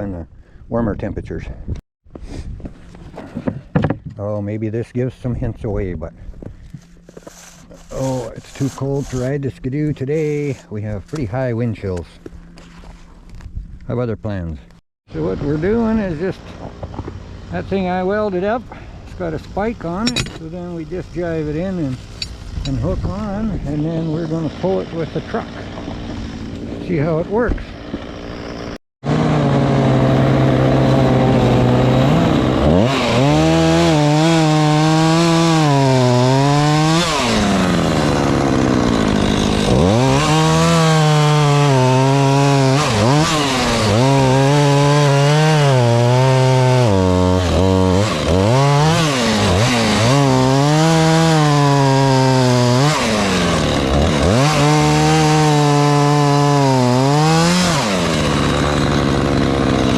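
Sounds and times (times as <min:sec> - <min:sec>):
chainsaw engine revving: 0:15.1 - 0:59.9.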